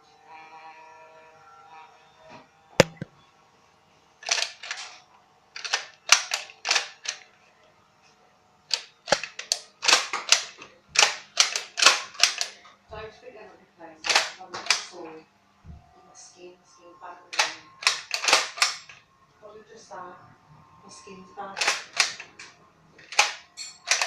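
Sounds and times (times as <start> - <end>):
toy blaster firing darts: 2.8 - 3.1, 8.7 - 12.6, 14.0 - 14.9, 17.4 - 19.0, 21.6 - 22.5, 23.1 - 24.0.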